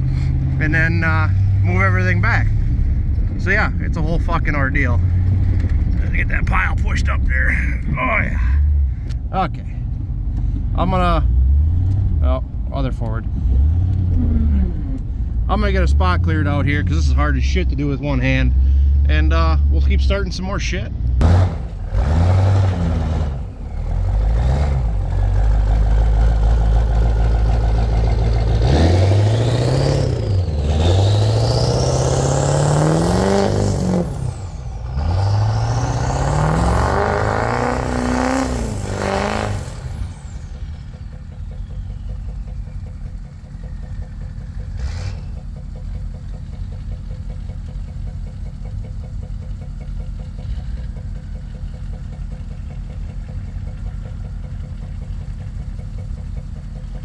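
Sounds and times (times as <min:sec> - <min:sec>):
vehicle engine revving: 0:00.0 - 0:57.0.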